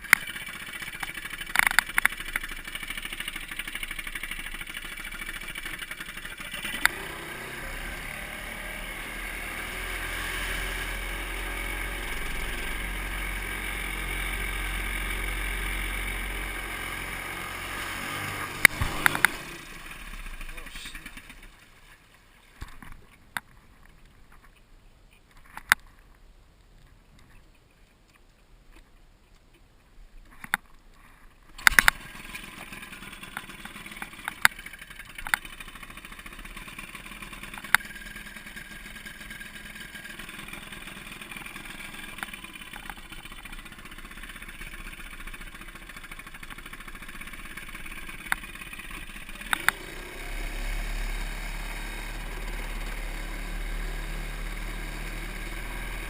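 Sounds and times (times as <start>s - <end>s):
loud clatter: 0.0s - 7.1s, 31.6s - 49.9s
outboard motor running: 0.0s - 22.1s, 31.6s - 56.0s.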